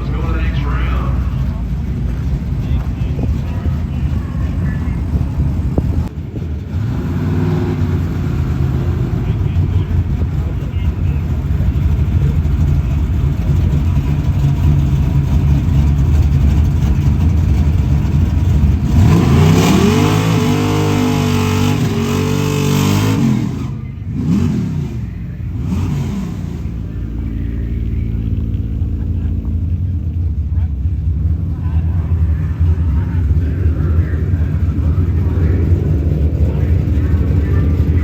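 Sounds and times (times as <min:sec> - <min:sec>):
drag racing cars idling: 0:00.0 - 0:38.0
engine rev blips: 0:00.0 - 0:38.0
engine launching at full throttle: 0:18.8 - 0:29.2.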